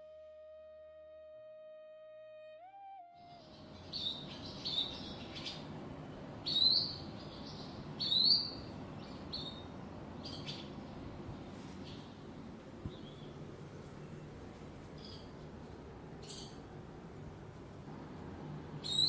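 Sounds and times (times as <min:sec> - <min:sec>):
bird chirping: 0:03.2 - 0:05.6
faint steady background noise: 0:03.2 - 0:19.0.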